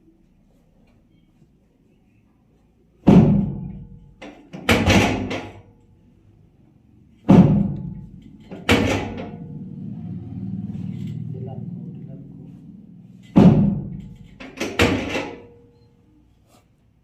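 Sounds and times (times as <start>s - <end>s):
heavy thud: 3.0s - 3.9s, 7.2s - 9.5s, 13.3s - 15.3s.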